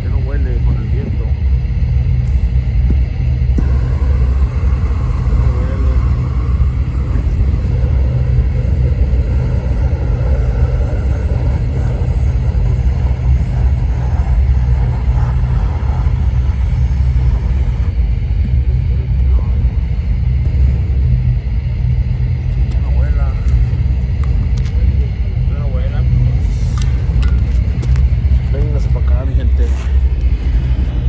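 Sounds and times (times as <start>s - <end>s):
roofing torch roaring: 0.0s - 31.0s.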